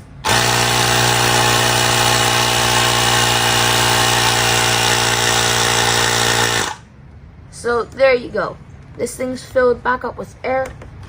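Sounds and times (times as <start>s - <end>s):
electric air pump humming: 0.0s - 6.8s.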